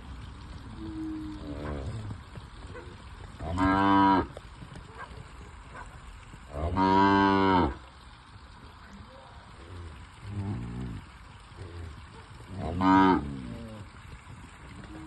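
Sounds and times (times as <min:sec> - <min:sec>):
heifers mooing: 0:00.6 - 0:04.4, 0:10.2 - 0:14.0.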